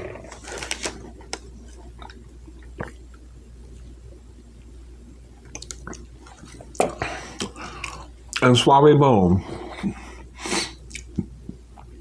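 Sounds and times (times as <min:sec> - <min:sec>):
steady low hum: 0:00.0 - 0:12.0
wet chewing smacks: 0:10.9 - 0:11.9.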